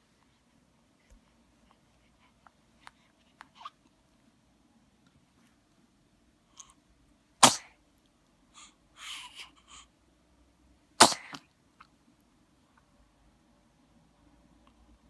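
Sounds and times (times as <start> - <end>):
faint soft noises: 0.0 - 15.0
person sneezing: 7.4 - 7.8, 11.0 - 11.4.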